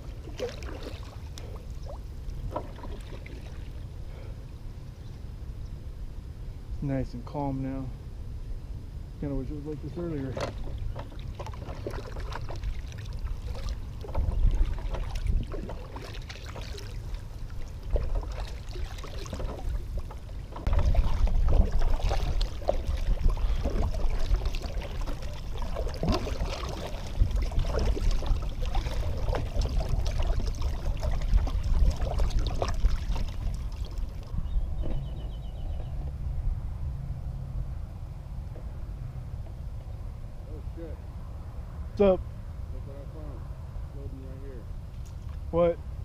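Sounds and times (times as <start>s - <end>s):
water trickling off paddle: 0.0s - 3.9s, 10.2s - 35.1s
paddle splashes: 0.0s - 4.3s, 10.1s - 35.3s
low rumble: 7.8s - 44.8s.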